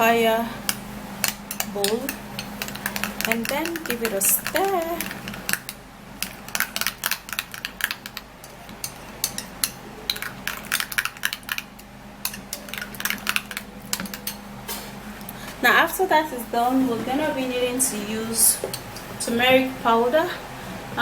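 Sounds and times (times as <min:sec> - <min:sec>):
spoon clicking against bowl: 0:00.7 - 0:11.6.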